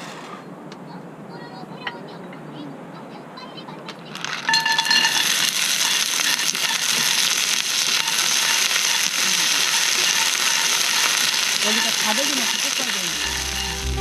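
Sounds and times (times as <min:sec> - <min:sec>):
food sizzling in hot pan: 0:04.1 - 0:14.0
metallic pan ring: 0:04.5 - 0:06.4.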